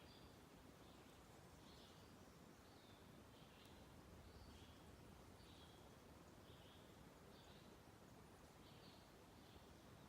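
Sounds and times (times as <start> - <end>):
faint click: 3.6 - 3.8.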